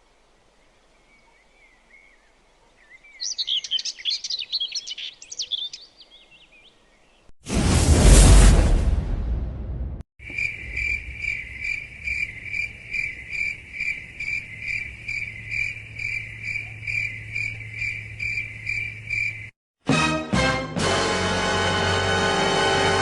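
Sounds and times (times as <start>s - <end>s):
cricket chirping: 10.2s - 19.5s.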